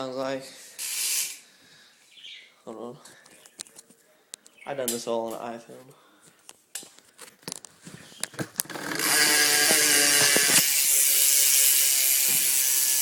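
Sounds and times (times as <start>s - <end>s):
bike hub freewheel clicking: 0.8s - 1.4s, 8.6s - 13.0s.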